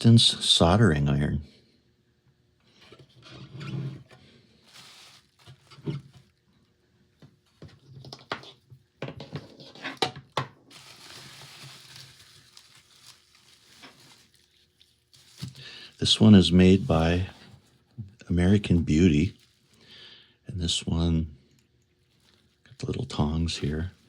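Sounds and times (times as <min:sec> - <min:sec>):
packaging rustling: 0:04.6 - 0:06.3, 0:10.7 - 0:20.0, 0:22.0 - 0:24.0.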